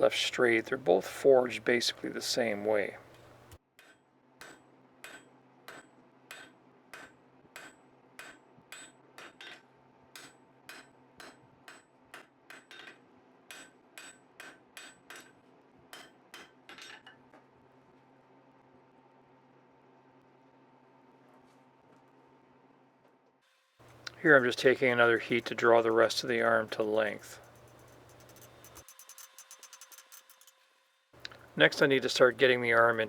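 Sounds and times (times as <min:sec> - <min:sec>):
hammer striking hot steel: 0:03.8 - 0:09.6, 0:10.2 - 0:17.2.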